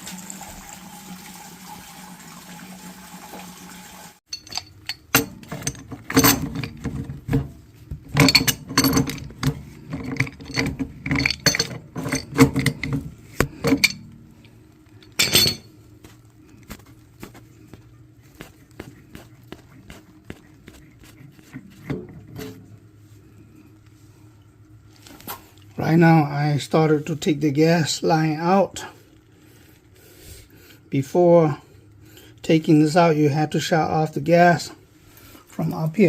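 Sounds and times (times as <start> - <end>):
water running: 0.0 - 15.7
metallic clinks and knocks: 4.3 - 14.2, 15.0 - 15.8.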